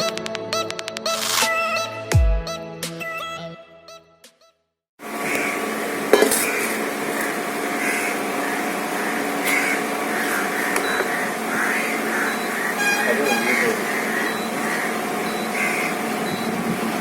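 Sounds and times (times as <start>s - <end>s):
steady machine hum: 5.0s - 17.0s.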